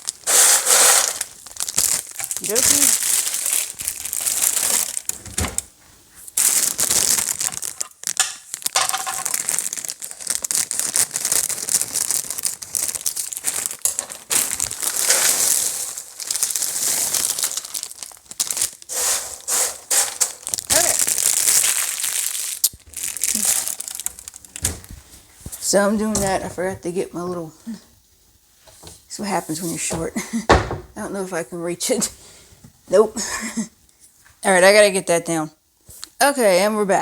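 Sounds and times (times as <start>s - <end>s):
plastic bag crinkling: 0.0s - 27.8s.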